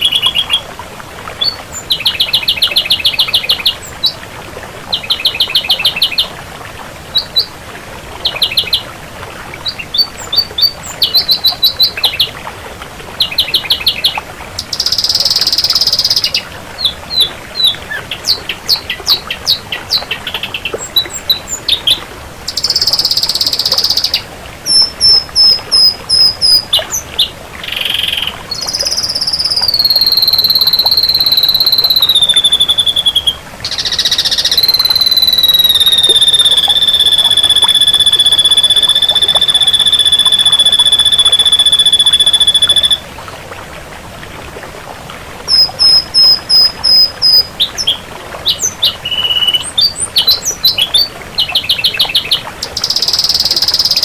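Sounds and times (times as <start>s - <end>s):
bird singing clipped and buzzy notes: 17.9s - 43.0s
long descending bird whistle: 22.6s - 26.6s, 28.5s - 43.0s, 45.5s - 47.5s, 49.0s - 49.9s, 52.7s - 54.0s.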